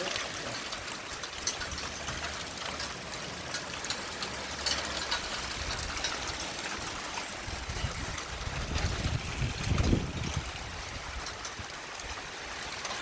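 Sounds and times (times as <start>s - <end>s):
wet snow ticking and drips: 0.0s - 13.0s.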